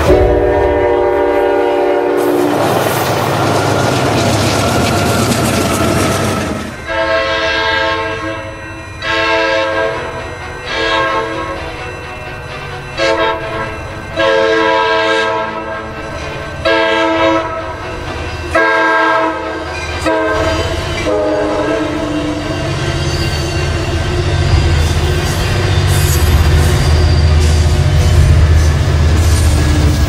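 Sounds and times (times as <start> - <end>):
train horn blasts: 0.0 - 2.7, 6.7 - 11.7, 12.4 - 22.8
low rumble of train running: 0.0 - 30.0.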